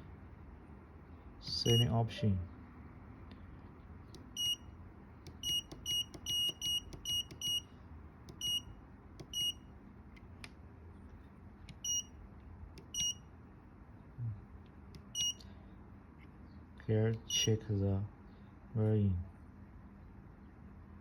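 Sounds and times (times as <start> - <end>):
keypad buzzer beeps: 1.5 - 2.0, 4.2 - 4.7, 5.3 - 7.7, 8.3 - 9.6, 11.7 - 12.2, 12.8 - 13.3, 15.0 - 15.4, 17.2 - 17.5.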